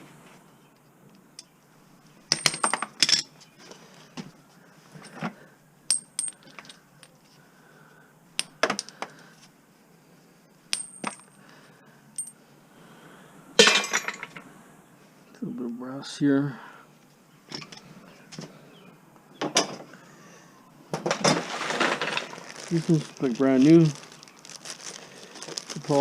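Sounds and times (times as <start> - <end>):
scrap metal clinking onto a pile: 5.9 - 7.1, 12.2 - 12.4, 13.6 - 14.4.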